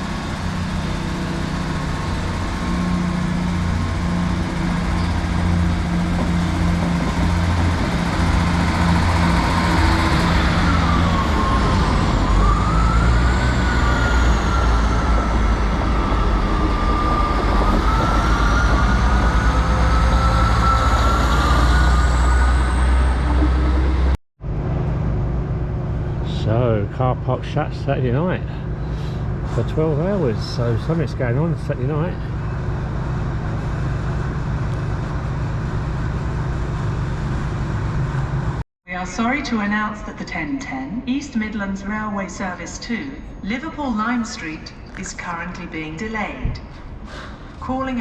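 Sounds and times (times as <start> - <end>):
diesel train engine running: 0.0 - 38.6
whine rising and falling in pitch: 2.6 - 24.9.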